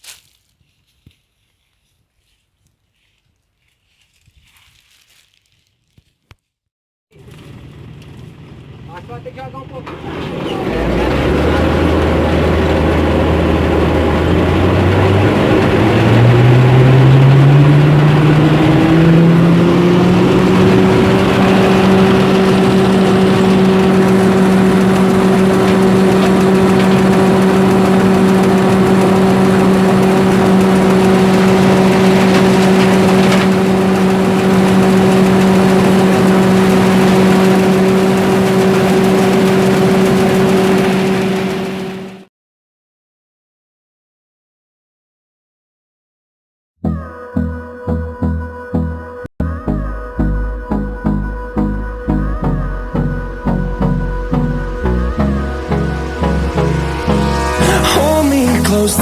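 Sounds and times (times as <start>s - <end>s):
machine motor humming: 9.8s - 42.2s, 50.8s - 59.0s.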